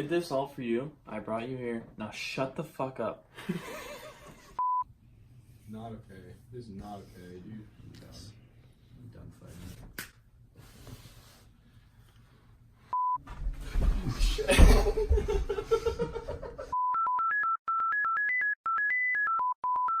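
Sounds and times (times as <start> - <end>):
electronic beep melody: 16.8 - 20.0.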